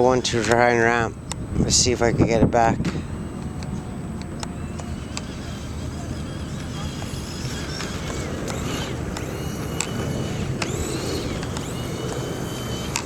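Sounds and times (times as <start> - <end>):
electric motor whine: 0.0 - 13.0
sharp clicks: 7.7 - 13.0.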